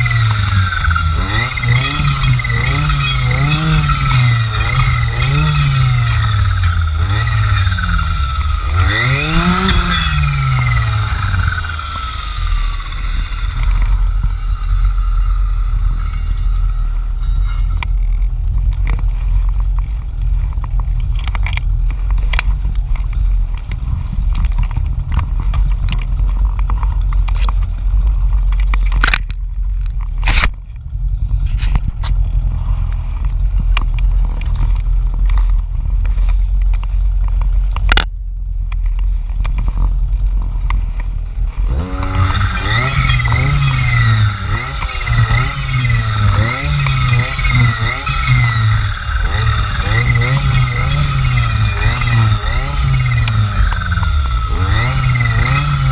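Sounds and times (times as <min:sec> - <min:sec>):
two-stroke saw engine: 0:00.0 - 0:18.3, 0:40.6 - 0:55.9.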